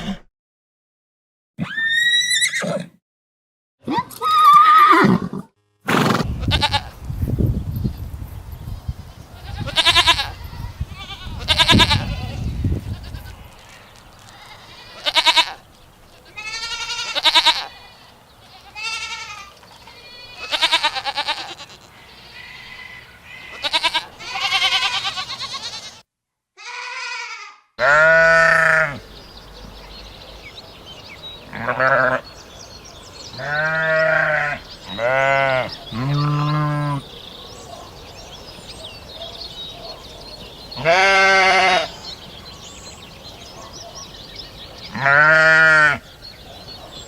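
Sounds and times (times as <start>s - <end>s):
goats bleating: 6.4s - 6.9s, 9.4s - 15.6s, 16.2s - 26.0s, 26.6s - 29.0s, 31.5s - 32.3s, 33.4s - 37.0s, 40.8s - 42.0s, 44.9s - 46.0s.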